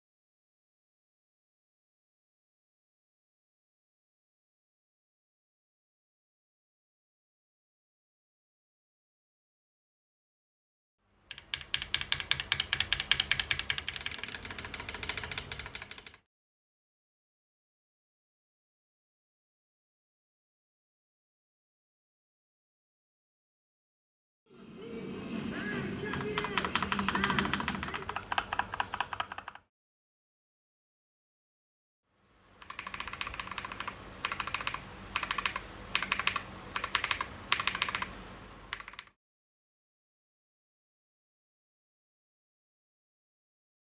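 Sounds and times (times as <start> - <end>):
mechanical keyboard typing: 11.3 - 16.2, 26.1 - 29.6, 32.6 - 39.2.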